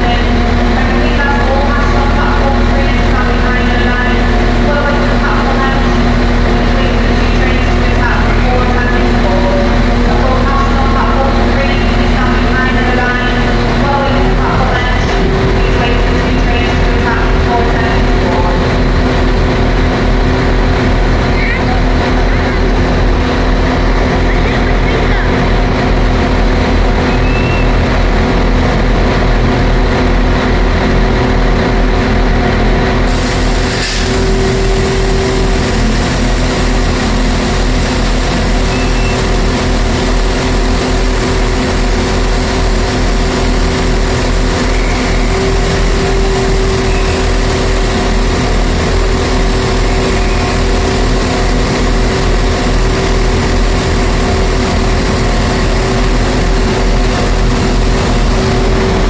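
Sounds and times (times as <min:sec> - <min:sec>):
train engine humming: 0:00.0 - 0:59.0
broad hiss: 0:33.1 - 0:45.3.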